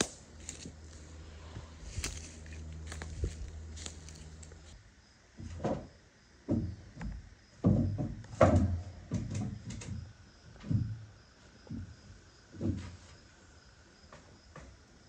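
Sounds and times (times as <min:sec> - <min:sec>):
dull thuds and knocks: 0:06.5 - 0:11.1, 0:11.7 - 0:13.1.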